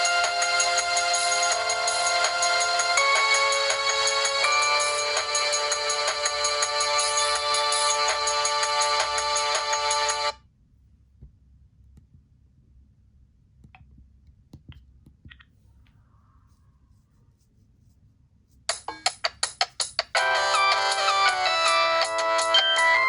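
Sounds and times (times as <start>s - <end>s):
polyphonic ringtone melody: 0.0s - 10.4s, 20.2s - 23.0s.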